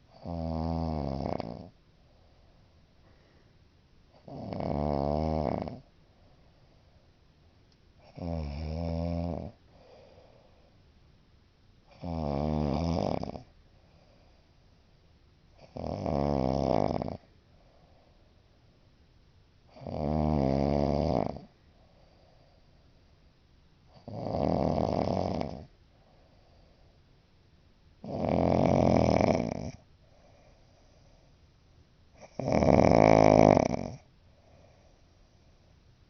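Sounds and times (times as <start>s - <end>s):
woman snoring loudly: 0.2s - 1.7s, 4.2s - 5.8s, 8.1s - 9.6s, 11.9s - 13.4s, 15.7s - 17.2s, 19.8s - 21.5s, 24.0s - 25.7s, 28.0s - 29.8s, 32.2s - 34.0s
faint breath: 1.9s - 3.7s, 5.9s - 7.3s, 9.6s - 10.9s, 13.6s - 14.9s, 17.4s - 18.9s, 21.5s - 23.3s, 25.8s - 27.2s, 30.0s - 31.6s, 34.2s - 35.9s.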